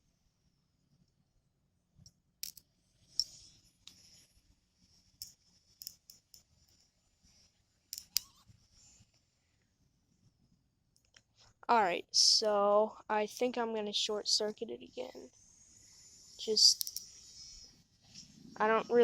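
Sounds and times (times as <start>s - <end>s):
faint hiss: 15.1s - 18.5s.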